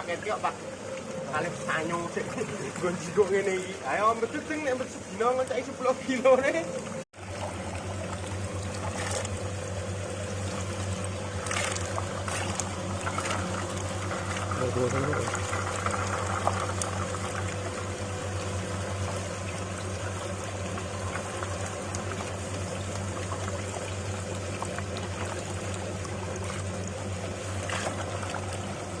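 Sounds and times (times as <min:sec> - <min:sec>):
motor hum: 0:00.0 - 0:29.0
rushing pouring noise: 0:07.2 - 0:29.0.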